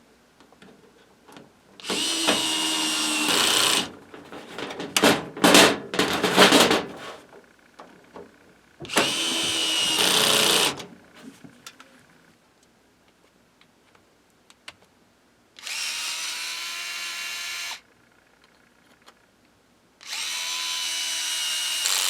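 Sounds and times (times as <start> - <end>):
electric screwdriver motor whining: 1.8 - 3.9, 8.9 - 10.8, 15.6 - 17.8, 20.0 - 22.0
irregular clattering: 1.9 - 11.3.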